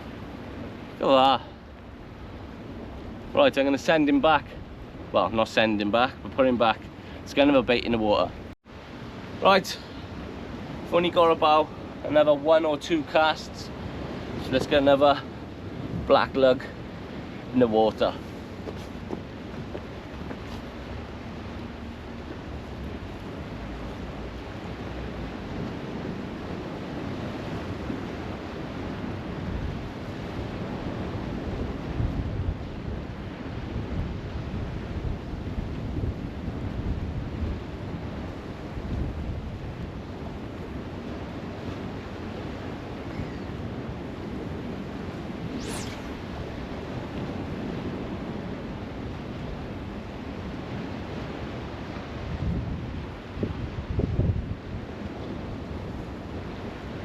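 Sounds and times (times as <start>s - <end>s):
surf washing on shore: 0.0s - 57.0s
wind buffeting microphone: 13.4s - 57.0s.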